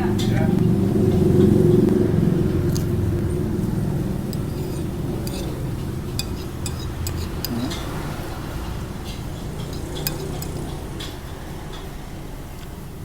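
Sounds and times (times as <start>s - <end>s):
low rumble of street traffic: 0.0s - 13.0s
spoon clinking against plate: 4.2s - 8.0s, 9.0s - 11.2s.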